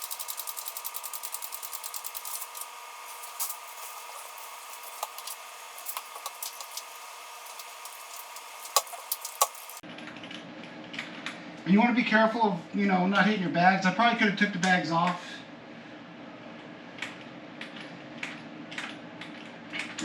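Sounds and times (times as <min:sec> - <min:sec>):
ratchet wrench clicking: 0:00.0 - 0:06.8.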